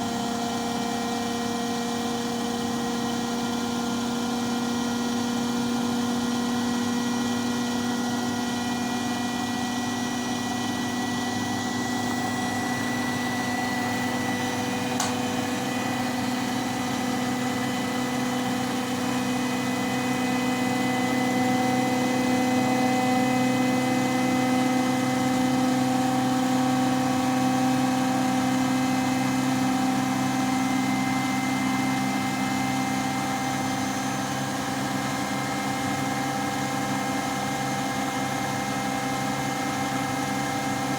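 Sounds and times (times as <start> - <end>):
washing machine whining hum: 0.0 - 40.9
click: 15.0 - 15.2.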